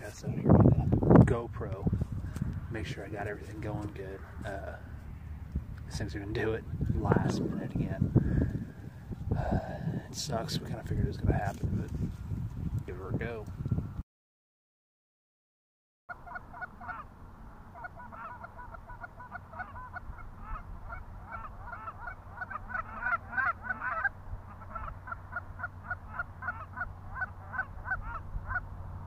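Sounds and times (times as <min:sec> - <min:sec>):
low steady hum: 0:00.0 - 0:11.4
geese honking: 0:16.1 - 0:28.7.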